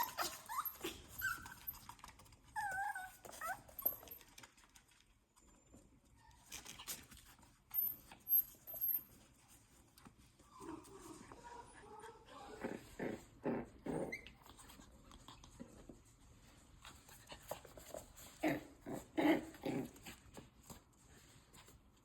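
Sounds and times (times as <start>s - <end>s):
puppies whimpering: 0.0s - 4.2s.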